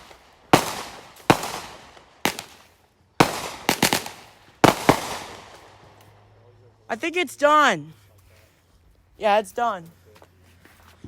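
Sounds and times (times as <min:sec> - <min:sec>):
firework bangs: 0:00.0 - 0:06.2.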